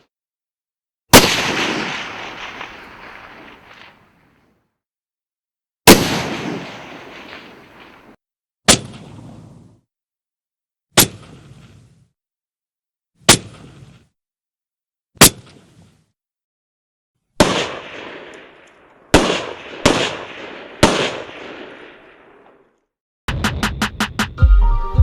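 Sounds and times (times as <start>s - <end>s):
rifle gunshots with echoes: 1.1s - 4.2s, 5.9s - 8.2s, 17.4s - 22.7s.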